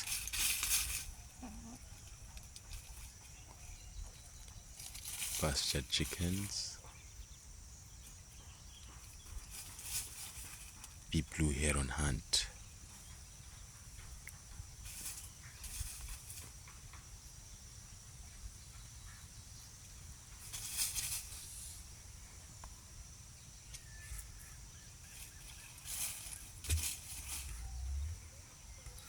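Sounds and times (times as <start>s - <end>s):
insects trilling: 0.0s - 29.0s
short hissing bursts: 20.6s - 22.0s.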